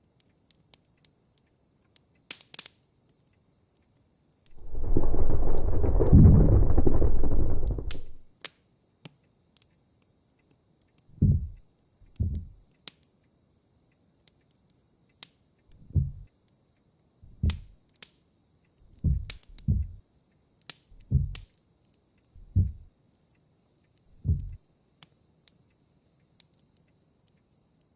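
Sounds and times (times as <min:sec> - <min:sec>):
dull low thuds: 0:04.5 - 0:08.2, 0:11.2 - 0:11.6, 0:12.2 - 0:12.6, 0:15.8 - 0:16.3, 0:17.3 - 0:17.7, 0:18.9 - 0:20.0, 0:21.0 - 0:21.4, 0:22.4 - 0:22.9, 0:24.2 - 0:24.6
low rumble of thunder: 0:04.5 - 0:08.2.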